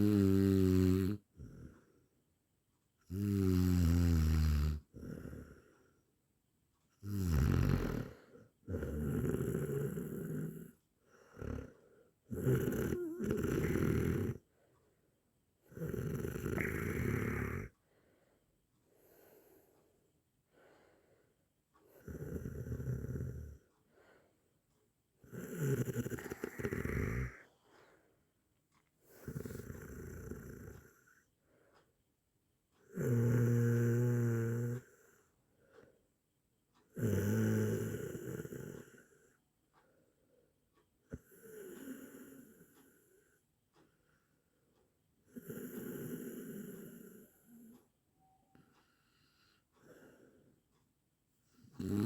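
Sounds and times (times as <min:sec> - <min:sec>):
person snoring: 0:00.0 - 0:01.9, 0:03.1 - 0:05.9, 0:07.0 - 0:14.4, 0:15.7 - 0:17.7, 0:21.9 - 0:23.6, 0:25.2 - 0:27.6, 0:29.1 - 0:31.2, 0:32.9 - 0:35.3, 0:36.9 - 0:39.3, 0:41.1 - 0:43.4, 0:45.3 - 0:47.7, 0:51.7 - 0:52.0.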